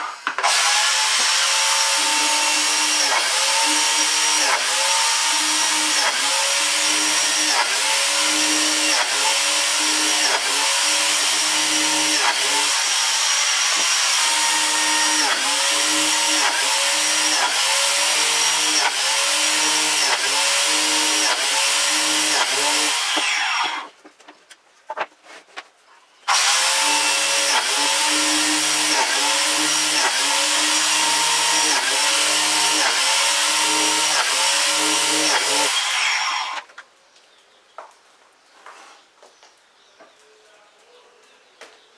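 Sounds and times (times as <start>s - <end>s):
electric wood planer running: 0.0s - 23.9s, 26.3s - 36.6s.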